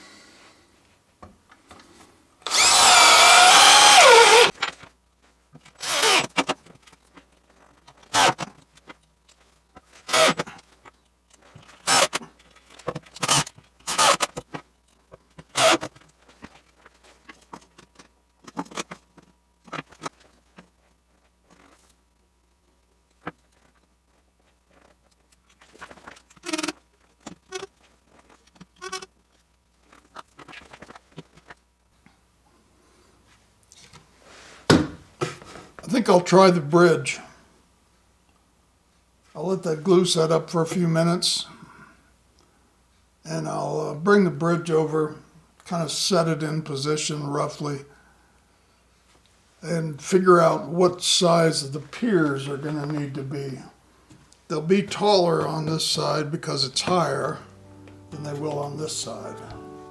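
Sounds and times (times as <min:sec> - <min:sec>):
cordless drill driving a screw: 0:02.4 - 0:04.5, 0:05.8 - 0:06.4, 0:08.1 - 0:08.4, 0:10.1 - 0:10.4, 0:11.8 - 0:12.2, 0:13.2 - 0:14.3, 0:15.6 - 0:15.9
knocks and scrapes of wood and tools: 0:33.8 - 0:35.8.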